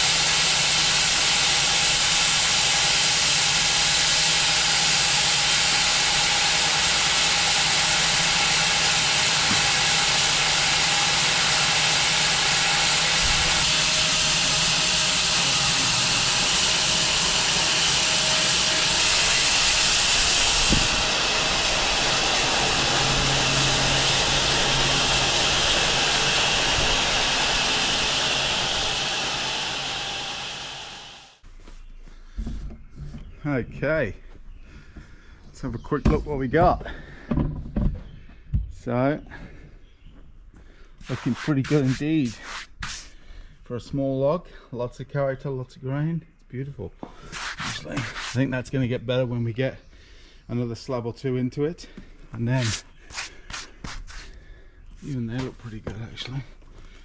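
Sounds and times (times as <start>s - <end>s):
bandsaw mill sawing log: 0.0s - 31.4s, 41.0s - 43.2s, 47.0s - 49.0s, 51.8s - 57.0s.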